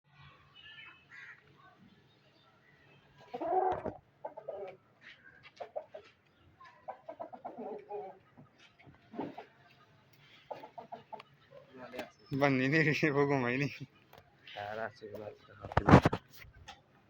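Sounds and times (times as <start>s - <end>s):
chickens clucking: 3.1s - 12.2s.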